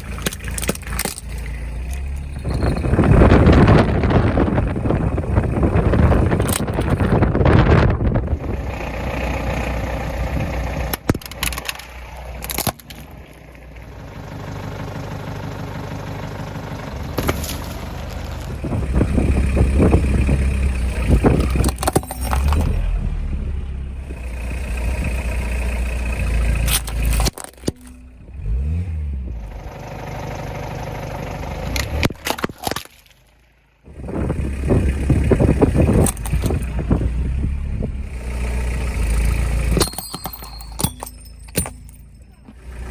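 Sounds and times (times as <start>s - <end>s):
tyres crushing objects: 0.0s - 3.8s, 11.0s - 13.4s, 17.2s - 18.9s, 21.1s - 22.8s, 26.7s - 28.1s, 31.8s - 33.3s, 39.6s - 42.6s
sharp cracks and crunches: 0.0s - 4.5s, 10.9s - 13.4s, 17.2s - 19.0s, 26.6s - 28.0s, 31.7s - 33.5s, 35.8s - 37.0s
low engine and tyre rumble: 0.0s - 42.9s.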